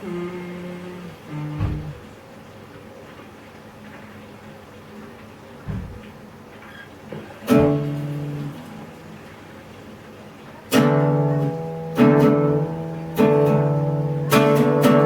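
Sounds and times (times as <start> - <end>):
acoustic guitar strummed chords: 7.4 - 9.2, 10.7 - 15.0.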